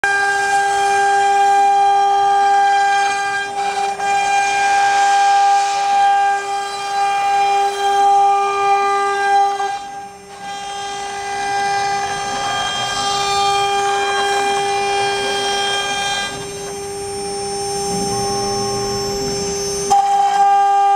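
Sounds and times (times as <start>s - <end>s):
router spindle whining: 0.0s - 20.9s.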